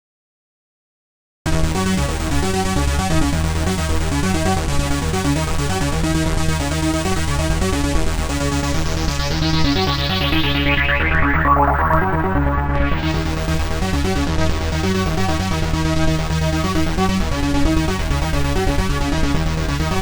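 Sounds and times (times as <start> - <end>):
electronic trance synth track: 1.5 - 20.0
synth filter sweep falling: 6.9 - 17.1.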